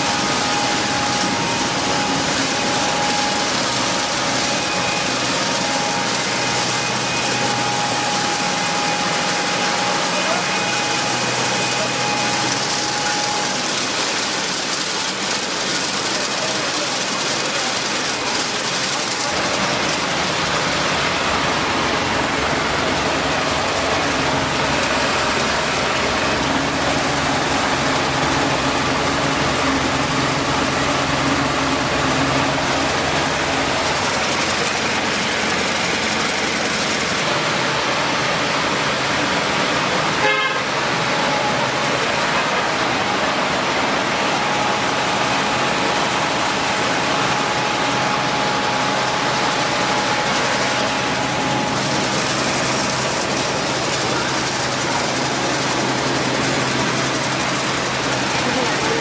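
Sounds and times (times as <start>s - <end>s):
milling machinery running: 0.0s - 59.0s.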